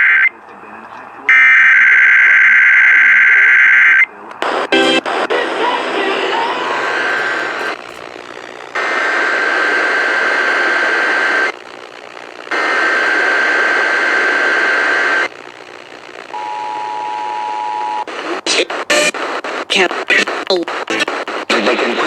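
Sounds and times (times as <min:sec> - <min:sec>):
radio static: 0:03.4 - 0:22.0
digital data bursts: 0:06.8 - 0:08.9.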